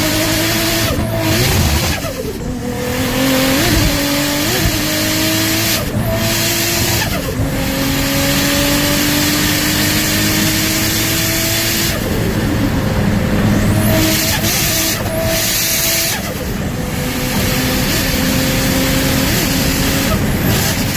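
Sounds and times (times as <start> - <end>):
car engine at full throttle: 0.0 - 20.9
turbo flutter: 1.3 - 2.4.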